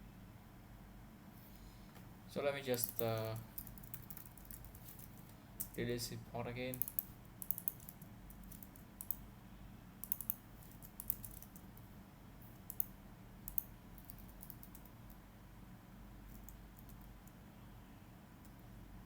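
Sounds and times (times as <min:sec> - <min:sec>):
low steady hum: 0:00.0 - 0:19.0
typing on computer keyboard: 0:02.7 - 0:04.9, 0:06.7 - 0:09.2, 0:10.0 - 0:11.9, 0:12.6 - 0:12.9, 0:13.5 - 0:15.0, 0:16.3 - 0:17.1.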